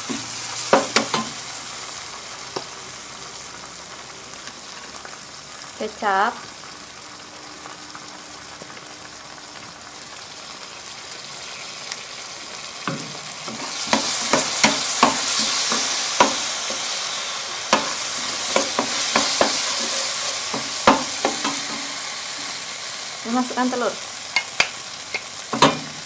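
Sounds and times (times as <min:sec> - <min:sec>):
food sizzling in a pan: 0:00.0 - 0:26.0
spatula scraping a pan: 0:12.9 - 0:22.7, 0:24.3 - 0:26.0.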